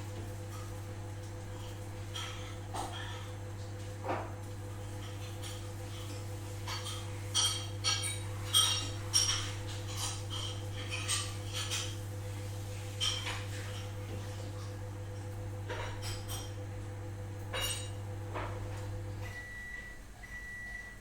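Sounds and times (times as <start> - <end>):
dishes and cutlery clinking: 6.6 - 12.0, 13.0 - 13.9.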